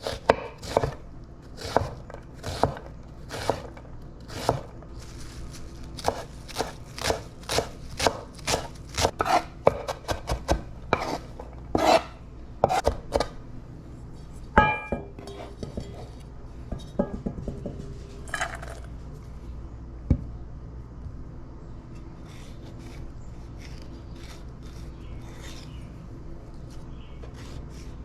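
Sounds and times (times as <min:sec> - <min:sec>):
knife chopping on cutting board: 0:00.0 - 0:01.0, 0:01.6 - 0:03.7, 0:06.0 - 0:13.3
ringing clink of a dish: 0:14.6 - 0:15.2.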